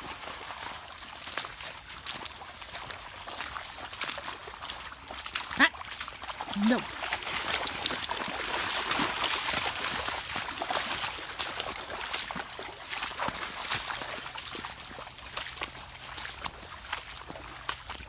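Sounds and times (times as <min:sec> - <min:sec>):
water trickling and sloshing: 0:00.0 - 0:18.0
small sharp clicks and crackles: 0:06.9 - 0:08.4.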